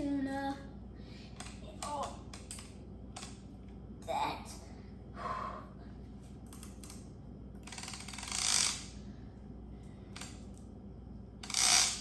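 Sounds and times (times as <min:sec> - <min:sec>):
fishing reel ratchet buzzing: 0:07.6 - 0:09.0, 0:11.4 - 0:12.0
fishing reel clicks: 0:07.7 - 0:08.9, 0:11.4 - 0:12.0.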